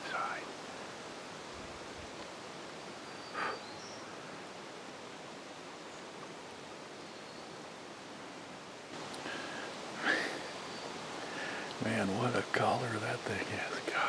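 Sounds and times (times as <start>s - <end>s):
woods background hiss: 0.0s - 14.0s
faint bird chirps: 2.6s - 4.6s, 5.8s - 7.7s, 9.0s - 14.0s.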